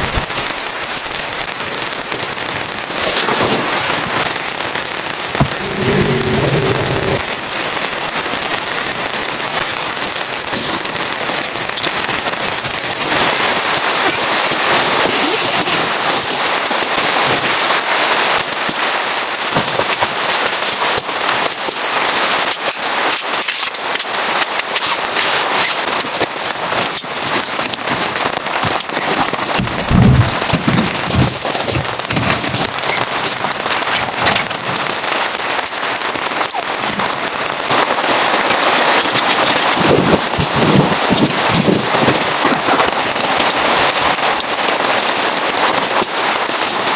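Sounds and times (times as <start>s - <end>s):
rain pattering: 0.0s - 46.9s
low thumps: 5.4s - 7.4s.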